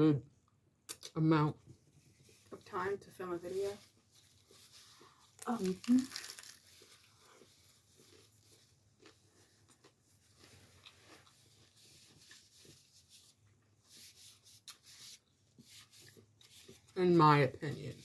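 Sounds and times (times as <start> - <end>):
soft eating clicks and rustles: 0.4 - 18.0
crunchy rustles: 4.1 - 8.7.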